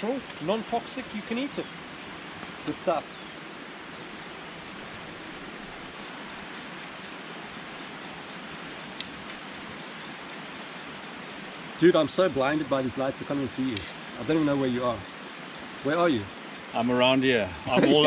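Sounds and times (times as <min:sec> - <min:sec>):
rushing background noise: 0:00.2 - 0:18.0
insect trilling: 0:05.9 - 0:18.0.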